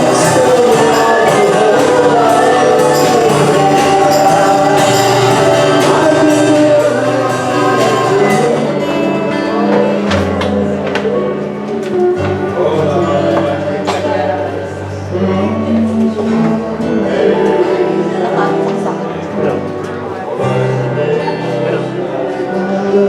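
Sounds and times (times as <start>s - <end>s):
drum and cymbal hits: 0.0s - 9.1s
live band playing slow song: 0.0s - 23.0s
voices singing: 0.0s - 23.0s.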